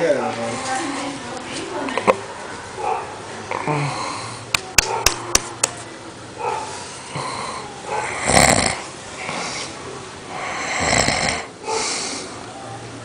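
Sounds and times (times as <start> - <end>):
man snoring: 7.1 - 8.8, 10.4 - 11.5
soft breathing: 9.1 - 12.4.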